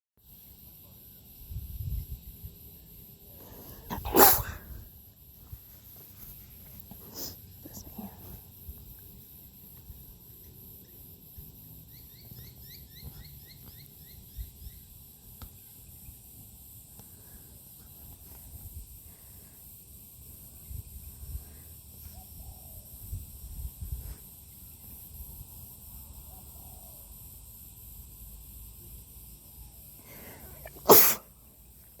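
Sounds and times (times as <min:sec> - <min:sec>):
person sneezing: 0:03.8 - 0:04.8, 0:30.4 - 0:31.3.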